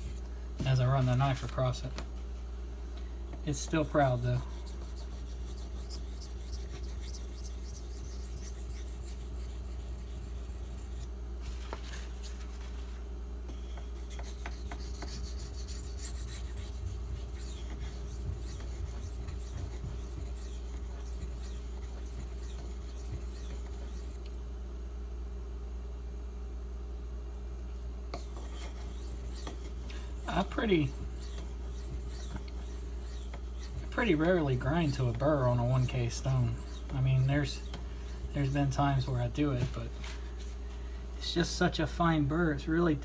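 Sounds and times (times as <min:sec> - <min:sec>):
steady low hum: 0:00.0 - 0:43.0
knife scraping on whetstone: 0:04.0 - 0:11.1, 0:13.5 - 0:24.2, 0:28.2 - 0:39.8.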